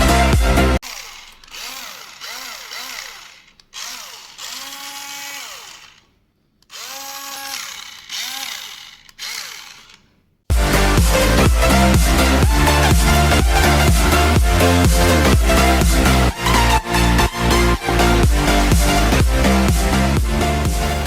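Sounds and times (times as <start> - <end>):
toy car electric motor whining: 0.8 - 10.1.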